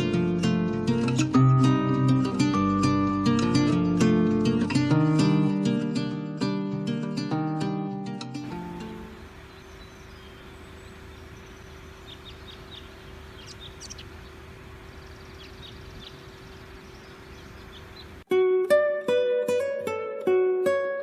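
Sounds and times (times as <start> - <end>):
plucked string music: 0.0 - 9.3, 18.3 - 21.0
small birds chirping: 8.4 - 18.3.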